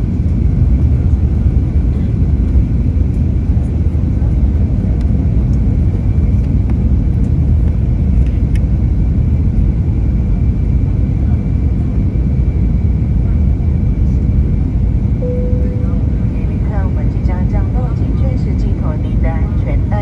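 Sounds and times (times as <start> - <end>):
airliner cabin rumble: 0.0 - 20.0
faint high-pitched tone: 15.2 - 16.7.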